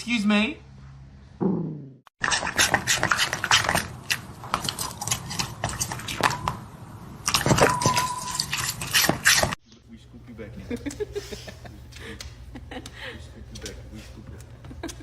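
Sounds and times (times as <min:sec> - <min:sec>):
dog chewing and crunching: 0:02.2 - 0:06.6, 0:07.2 - 0:09.6
steady high squeak: 0:07.6 - 0:09.6.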